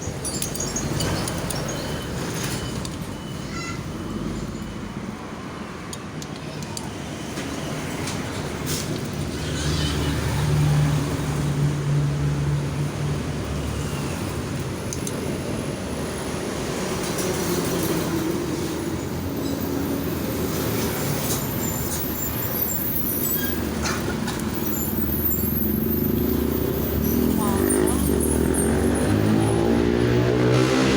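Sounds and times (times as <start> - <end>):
vehicle engine humming: 21.0 - 30.9.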